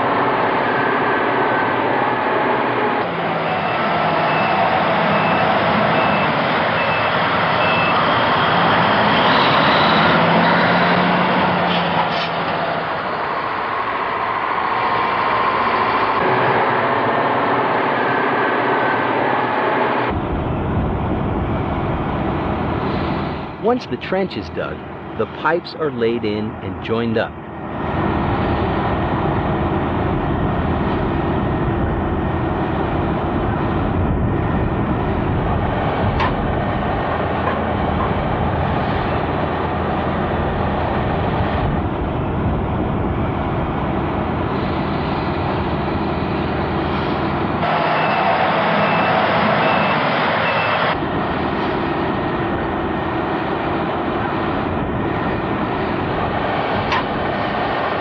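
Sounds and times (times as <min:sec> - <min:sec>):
diesel machinery engines running: 0:00.0 - 0:58.0
reversing alarm beeping: 0:03.2 - 0:10.6, 0:47.6 - 0:51.0.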